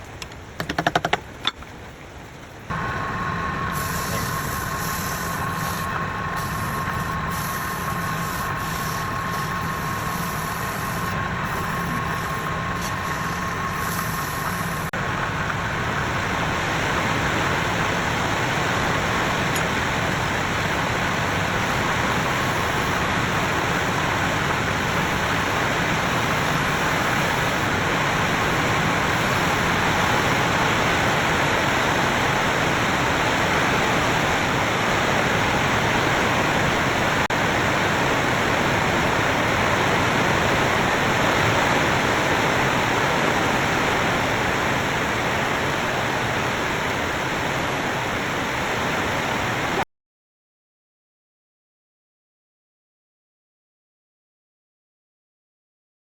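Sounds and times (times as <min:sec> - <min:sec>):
woodturning lathe running: 0:02.7 - 0:14.9.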